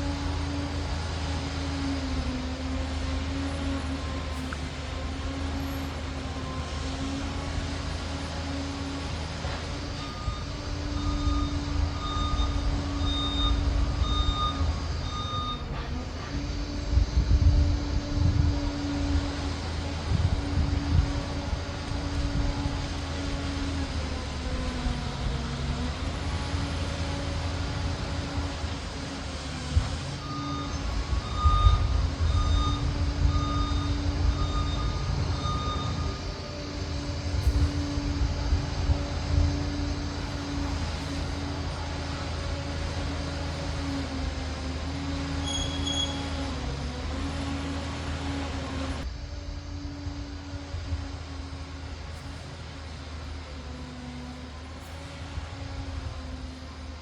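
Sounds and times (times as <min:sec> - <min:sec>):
diesel engine low rumble: 0:00.0 - 0:57.0
reversing alarm beeping: 0:08.0 - 0:16.6, 0:30.1 - 0:38.2, 0:44.9 - 0:49.0.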